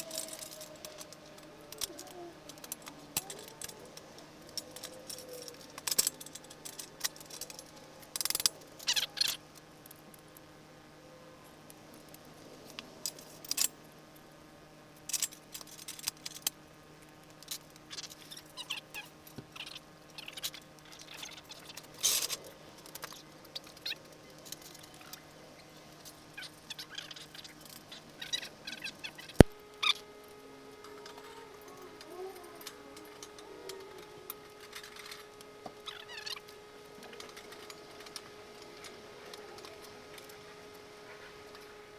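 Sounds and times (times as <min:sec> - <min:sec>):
tools and metal parts clinking: 0:00.0 - 0:09.4, 0:13.0 - 0:13.8, 0:15.1 - 0:16.6, 0:17.4 - 0:25.3, 0:32.6 - 0:36.4
steady low hum: 0:00.0 - 0:41.9.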